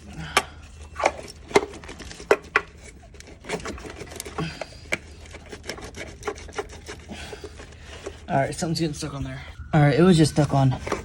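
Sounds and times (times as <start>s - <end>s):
plastic connectors clicking and rattling: 0.0s - 8.3s.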